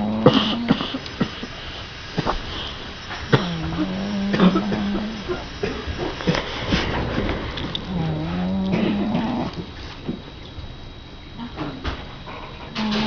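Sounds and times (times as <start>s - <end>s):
cat snoring: 0.0s - 1.6s, 2.2s - 10.0s
soft breathing noise: 0.0s - 10.4s.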